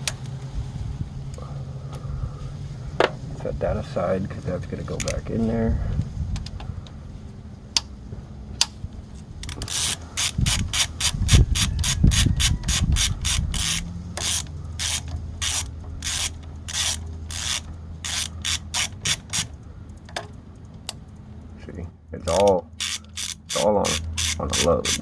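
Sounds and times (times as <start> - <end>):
low rubbing rumble: 0.0 - 25.0
ratchet wrench clicking: 9.4 - 19.6, 22.2 - 25.0.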